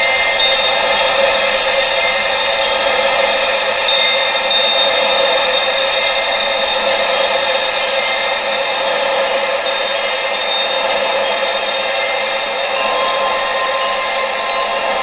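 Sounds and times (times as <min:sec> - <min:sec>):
thin high-pitched tones: 0:09.8 - 0:15.0.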